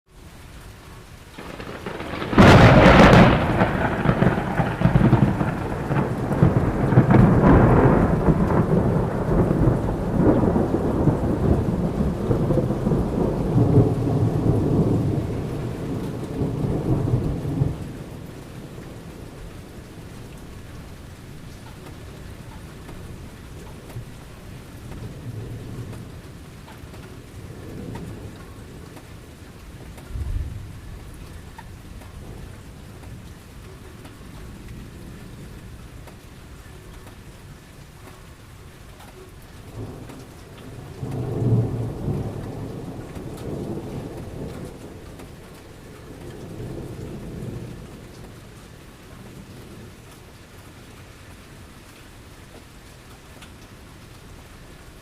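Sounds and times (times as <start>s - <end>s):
steady rain: 0.1s - 55.0s
thunder: 1.4s - 18.3s, 30.0s - 31.1s, 39.7s - 48.3s.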